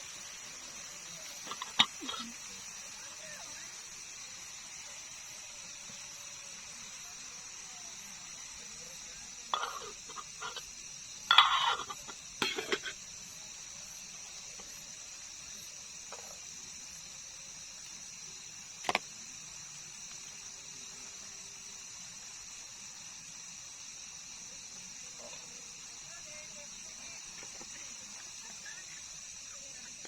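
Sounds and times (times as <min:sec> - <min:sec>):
night insects chirring: 0:00.0 - 0:30.0
cooking utensils clinking on pot: 0:01.4 - 0:02.3, 0:09.5 - 0:10.7, 0:11.3 - 0:13.0.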